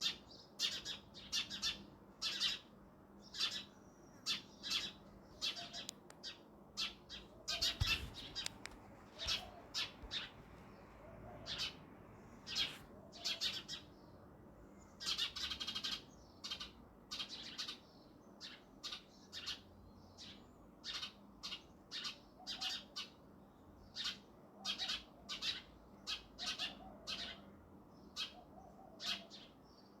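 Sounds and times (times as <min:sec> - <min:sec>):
sparrow chirping: 0:00.0 - 0:08.6, 0:09.2 - 0:14.2, 0:14.8 - 0:23.2, 0:23.8 - 0:30.0.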